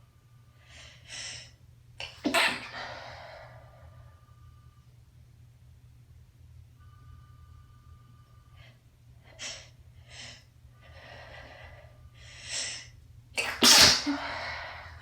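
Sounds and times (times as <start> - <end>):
person sneezing: 2.0 - 3.0, 13.4 - 14.4.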